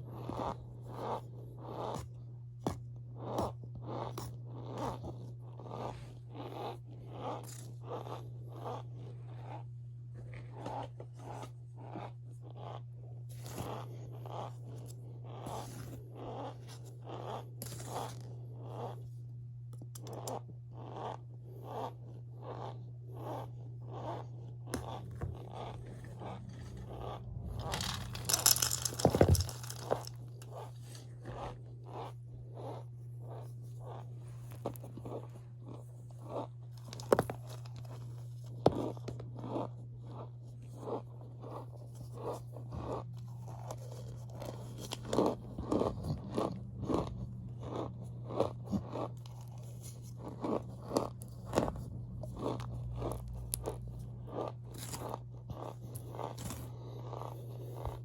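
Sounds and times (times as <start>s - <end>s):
low hum: 24.6s - 32.6s, 43.1s - 56.8s.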